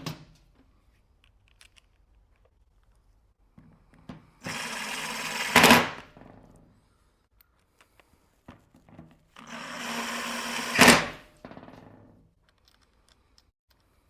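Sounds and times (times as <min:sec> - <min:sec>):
angle grinder running: 0:04.4 - 0:06.1, 0:09.4 - 0:11.2.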